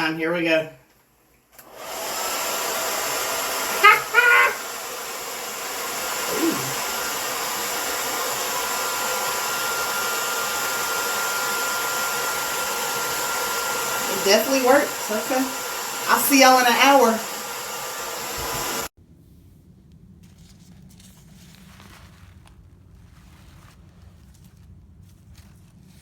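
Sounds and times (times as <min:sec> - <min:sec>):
blow dryer running: 0:01.6 - 0:18.9
loud vocal sound: 0:06.3 - 0:06.8.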